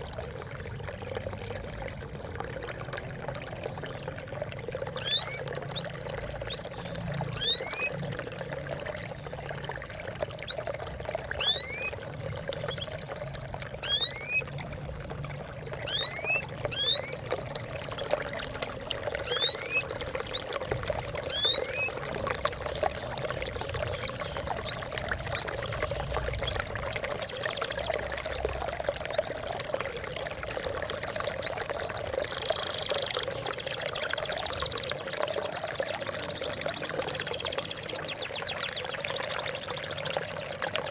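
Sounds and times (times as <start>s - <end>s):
water trickling and splashing: 0.0s - 40.9s
birds chirping: 4.8s - 8.0s, 8.9s - 14.5s, 15.8s - 28.2s, 31.4s - 40.9s.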